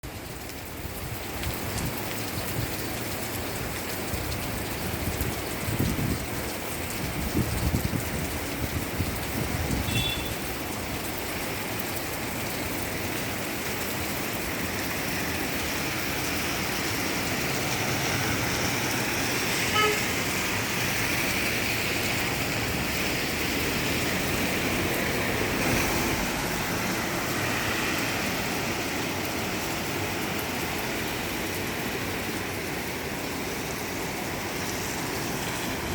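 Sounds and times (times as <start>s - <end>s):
rain hissing: 0.0s - 35.9s
road traffic passing: 8.3s - 35.9s
horn toot: 9.8s - 10.4s, 19.7s - 20.2s.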